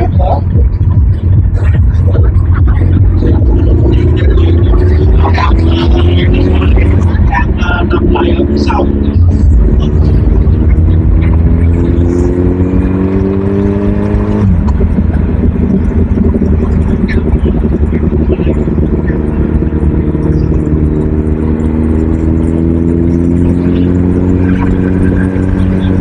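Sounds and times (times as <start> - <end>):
constant low rumble: 0.0 - 26.0
engine accelerating: 0.0 - 26.0.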